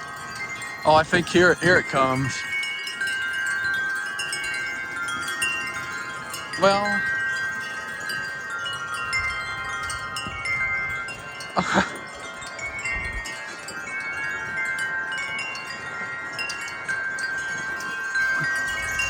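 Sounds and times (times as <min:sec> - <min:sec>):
wind chimes ringing: 0:00.0 - 0:19.0
low rumble of wind on microphone: 0:07.4 - 0:19.0.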